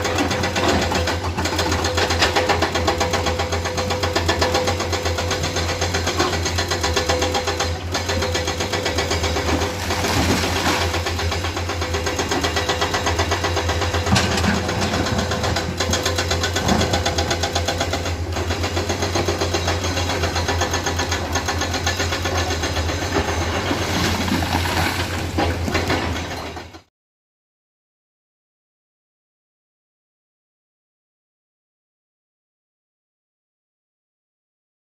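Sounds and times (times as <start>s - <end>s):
diesel engine running: 0.0s - 26.8s.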